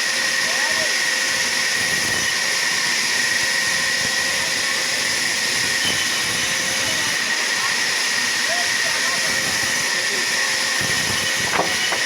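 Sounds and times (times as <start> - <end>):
high machine whine: 0.0 - 12.0
sawmill machinery rushing: 0.0 - 12.0.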